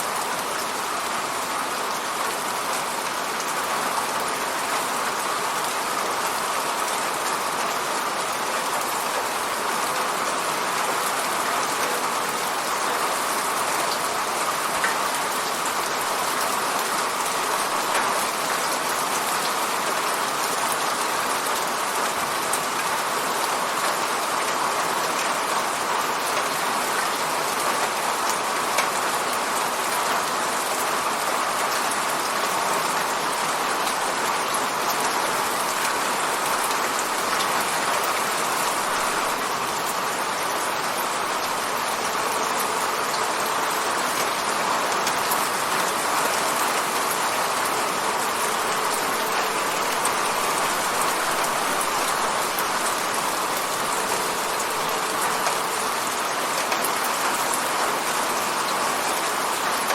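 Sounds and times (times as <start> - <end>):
rain pattering on a window: 0.0 - 59.9.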